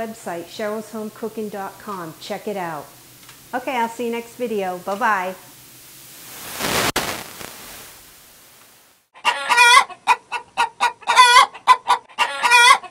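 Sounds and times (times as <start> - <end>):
chicken clucking: 9.2 - 12.9.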